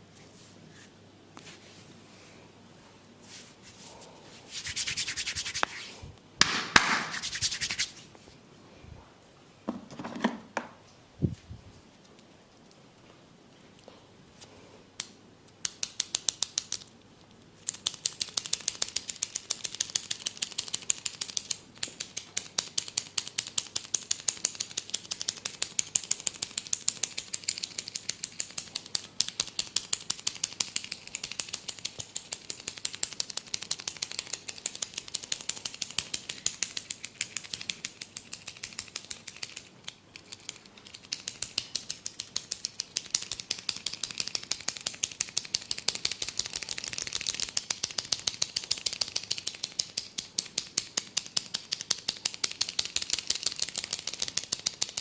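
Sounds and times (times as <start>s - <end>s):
fingers crackling through hair: 4.5s - 5.9s, 6.8s - 8.0s, 17.6s - 55.0s.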